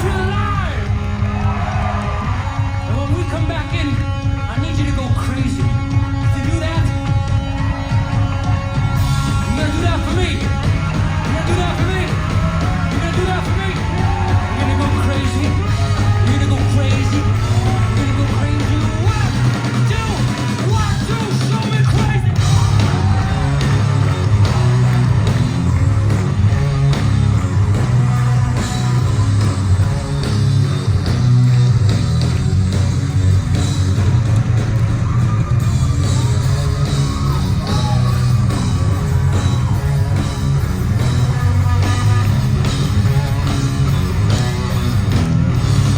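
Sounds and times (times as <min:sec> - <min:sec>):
singer yelling vocals: 0:00.0 - 0:02.2, 0:09.4 - 0:23.6
live rock band playing: 0:00.0 - 0:45.9.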